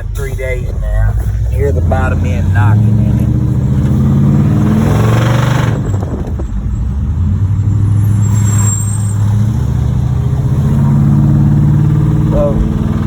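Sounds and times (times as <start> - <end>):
car engine running: 0.0 - 8.2, 9.1 - 13.0.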